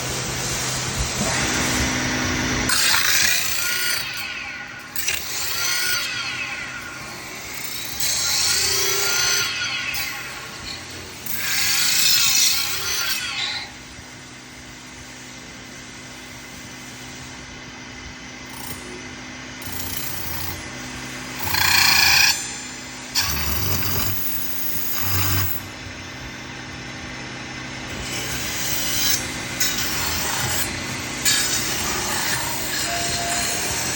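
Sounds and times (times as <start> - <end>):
metal scraping and squealing: 1.2 - 13.8, 28.7 - 33.9
lathe running: 26.6 - 33.9.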